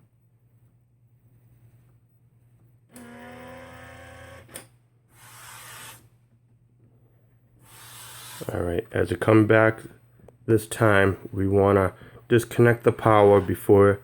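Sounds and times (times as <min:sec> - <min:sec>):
printer whirring: 0:07.7 - 0:08.5.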